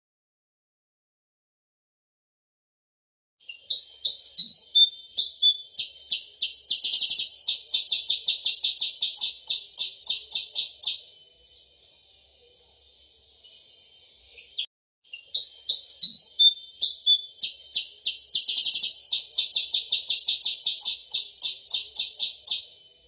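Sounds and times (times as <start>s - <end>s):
sharp high bird chirps: 3.4s - 11.8s, 13.2s - 23.0s
steady high hiss: 5.6s - 14.7s, 15.3s - 23.0s.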